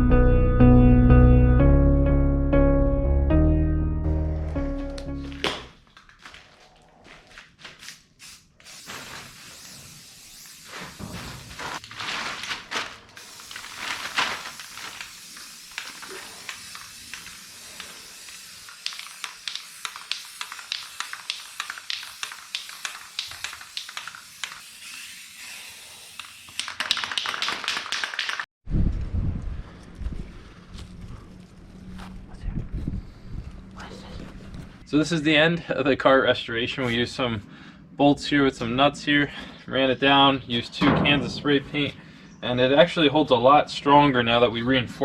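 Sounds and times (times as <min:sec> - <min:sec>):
spray paint can hissing: 0:08.2 - 0:11.8, 0:13.2 - 0:28.4.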